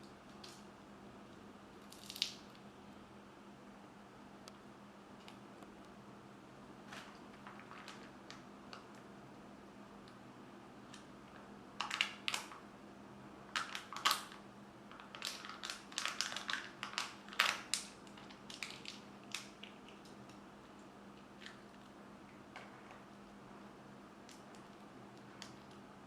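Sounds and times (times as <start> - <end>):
plastic and foil packaging crinkling: 6.9 - 8.4, 11.8 - 12.6, 13.5 - 20.2.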